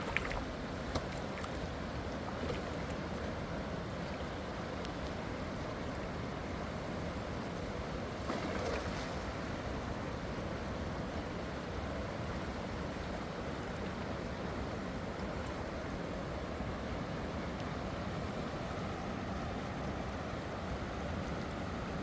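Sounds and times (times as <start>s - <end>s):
river water rushing: 0.0s - 22.0s
water splash: 8.2s - 9.5s.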